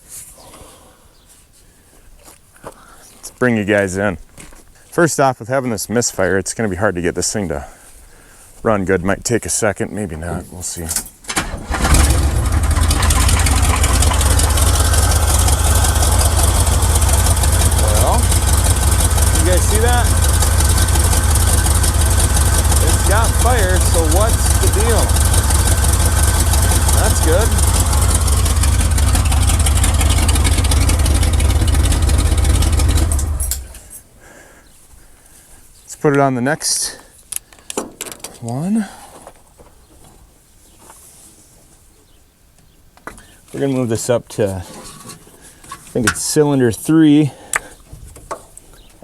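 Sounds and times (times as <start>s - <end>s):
engine idling with a misfire: 11.4s - 34.0s.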